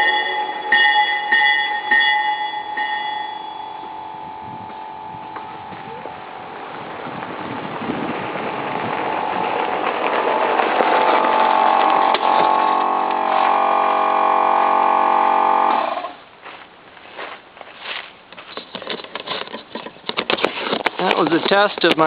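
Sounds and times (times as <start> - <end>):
locomotive air horn chord: 3.3 - 7.5, 8.8 - 16.2.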